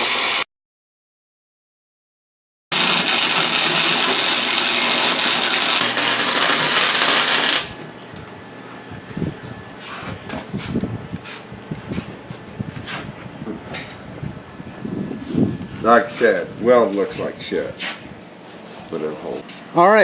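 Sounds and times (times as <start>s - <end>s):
arc welding crackling hiss: 2.7s - 7.8s.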